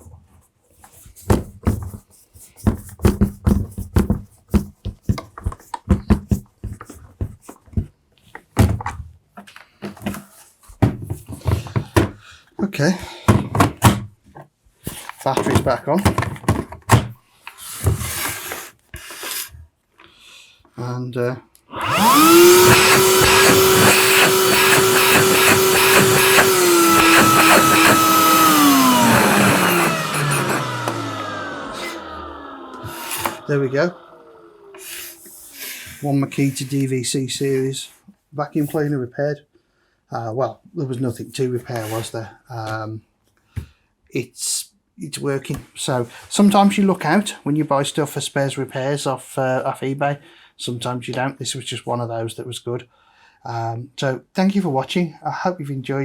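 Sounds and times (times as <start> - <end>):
vacuum cleaner motor whine: 21.7 - 35.7.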